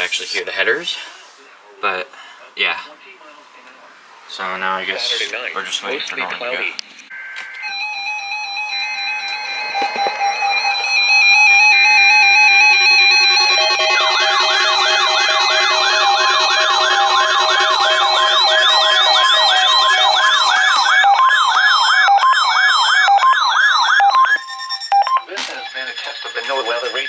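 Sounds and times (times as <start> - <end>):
sweeping siren-like alarm tone: 7.1 - 27.0
warbling electronic tones: 7.1 - 27.0.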